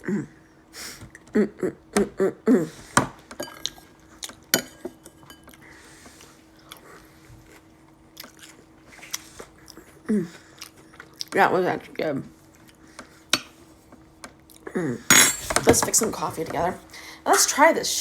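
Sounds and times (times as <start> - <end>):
dishware clinking: 15.1 - 16.1.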